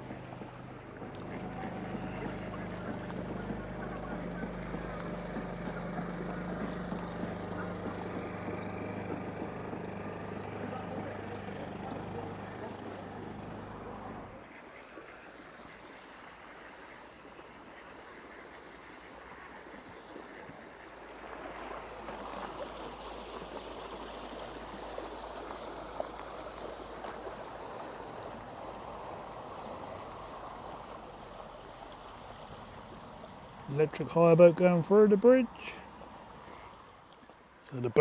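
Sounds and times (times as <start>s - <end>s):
faint low hum: 0.0s - 14.4s
river water rushing: 0.0s - 14.5s.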